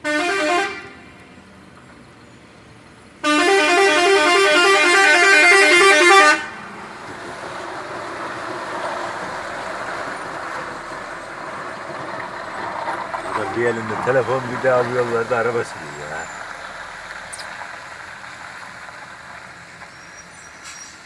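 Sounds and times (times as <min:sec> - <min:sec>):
truck air horn melody: 0:00.0 - 0:01.2, 0:03.2 - 0:06.7
truck engine noise: 0:00.0 - 0:21.0.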